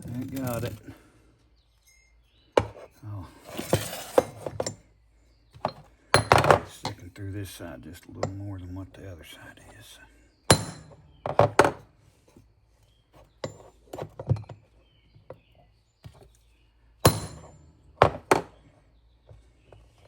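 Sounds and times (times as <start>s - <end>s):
knocks on metal and plastic parts: 2.6s - 2.8s, 5.6s - 7.0s, 10.5s - 11.9s, 17.0s - 18.6s.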